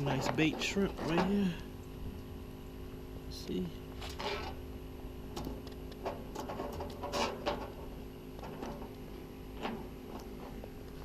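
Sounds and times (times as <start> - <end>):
faint steady hum: 0.0 - 11.0
clicks taps and rustles: 9.6 - 11.0.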